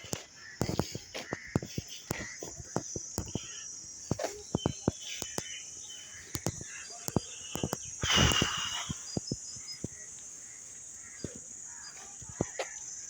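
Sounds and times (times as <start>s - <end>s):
sharp clicks: 0.0s - 10.3s
faint bird chirps: 0.0s - 13.0s
high insect drone: 0.0s - 13.0s.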